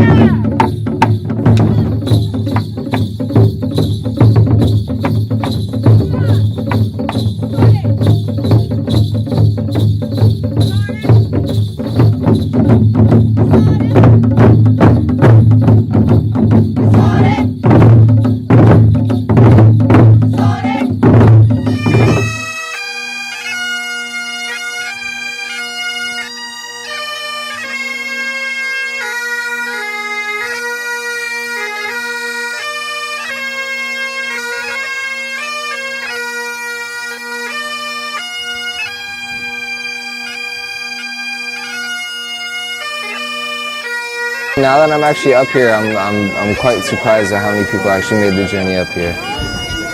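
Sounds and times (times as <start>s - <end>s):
loud drum beats: 0.0s - 22.5s, 44.6s - 49.9s
bagpipe melody with drones: 21.5s - 49.9s.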